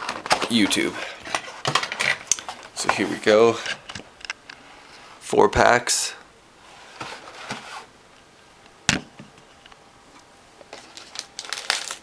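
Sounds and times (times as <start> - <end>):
foil wrappers crinkling: 10.6 - 12.0.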